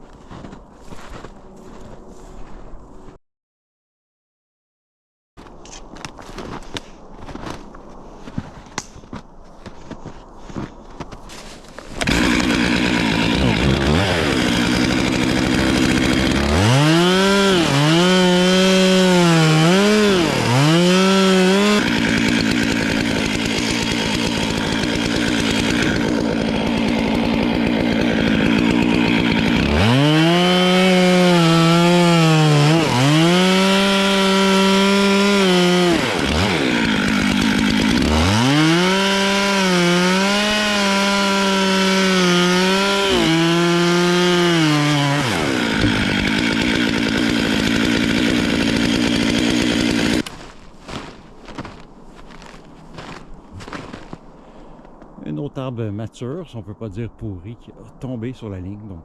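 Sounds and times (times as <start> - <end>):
chainsaw revving and cutting wood: 11.8 - 54.2.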